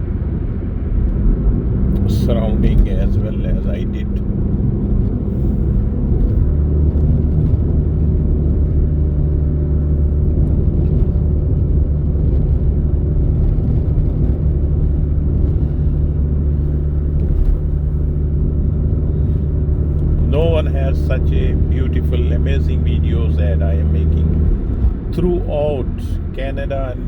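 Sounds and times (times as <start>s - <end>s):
car engine and road rumble: 0.0s - 27.0s.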